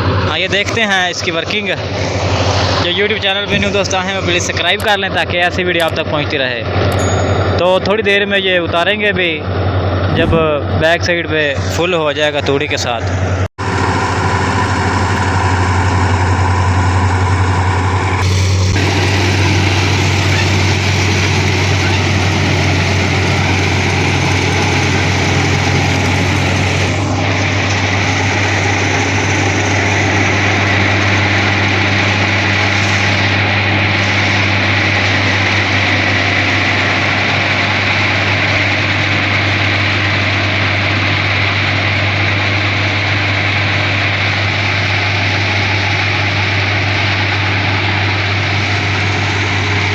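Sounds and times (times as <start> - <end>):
deep engine drone: 0.0 - 49.9
higher tones: 6.9 - 8.7, 9.6 - 12.3.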